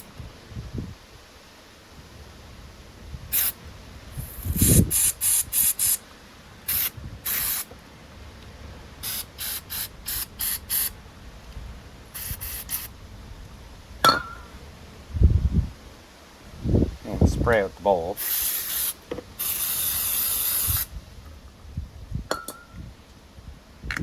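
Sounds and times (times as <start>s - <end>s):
aerosol spray hissing bursts: 3.3s - 3.6s, 4.2s - 6.0s, 6.7s - 7.7s, 9.0s - 11.0s, 12.1s - 12.9s, 18.2s - 20.9s.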